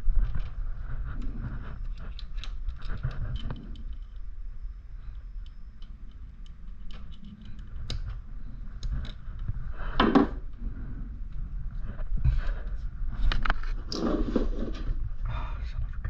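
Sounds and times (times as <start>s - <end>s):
rustling clatter: 0.0s - 4.4s, 11.7s - 15.1s.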